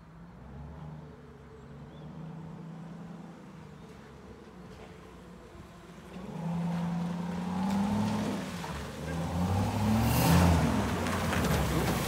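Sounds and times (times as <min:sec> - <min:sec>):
car engine revving: 0:05.9 - 0:12.0.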